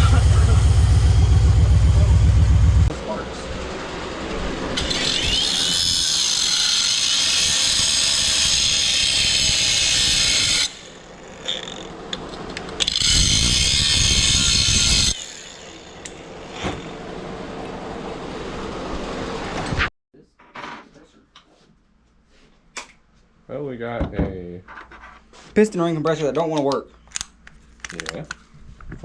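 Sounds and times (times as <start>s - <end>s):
high-speed power tool running: 0.0s - 12.0s, 12.8s - 17.2s.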